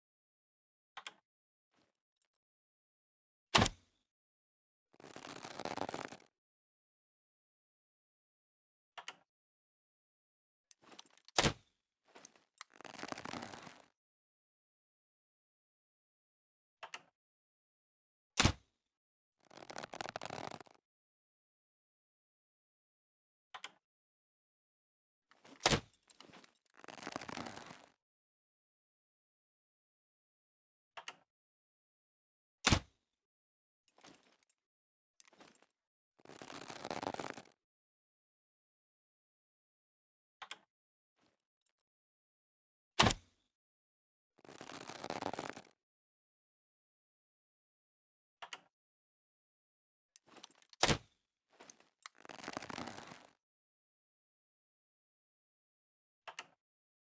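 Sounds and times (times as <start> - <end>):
rustling noise: 5.0 - 6.3, 36.2 - 37.5, 44.4 - 45.7, 52.2 - 53.4.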